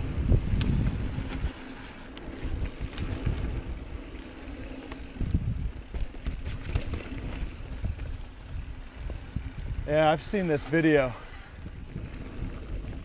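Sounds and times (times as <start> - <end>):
wind rumbling on microphone: 0.0 - 13.0
bike rattling clicks: 0.1 - 13.0
bike bumps: 4.9 - 9.8.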